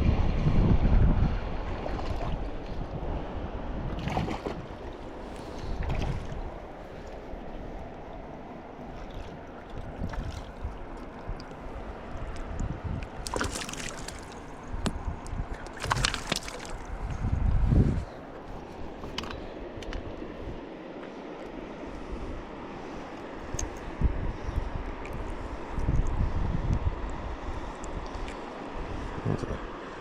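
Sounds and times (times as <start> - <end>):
wind rumbling on microphone: 0.0 - 30.0
water splashes: 3.9 - 17.3
river water flowing: 4.0 - 17.4, 18.0 - 24.0, 27.1 - 30.0.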